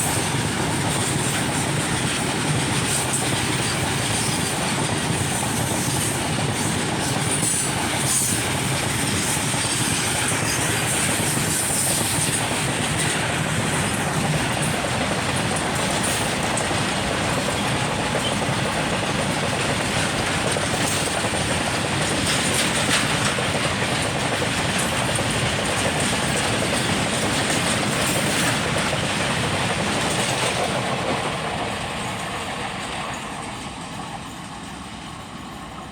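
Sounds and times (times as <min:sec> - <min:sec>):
wheels clattering over rail joints: 0:00.0 - 0:33.6
steel wheels rushing on rail: 0:00.0 - 0:35.9.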